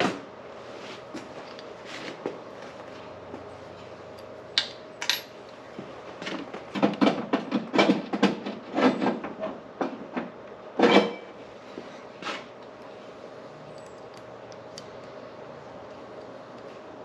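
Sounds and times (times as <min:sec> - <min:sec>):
metal tools clinking: 0:05.0 - 0:05.3.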